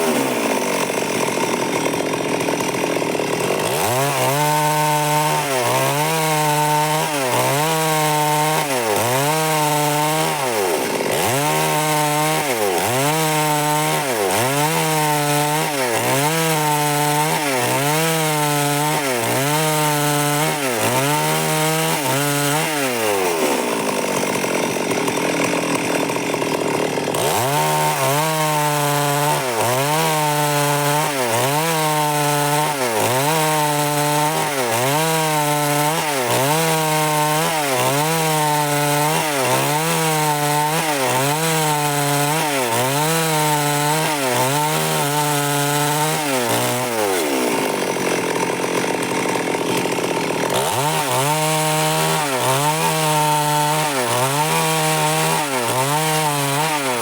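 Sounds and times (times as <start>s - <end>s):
chainsaw cutting wood: 0.0s - 57.0s.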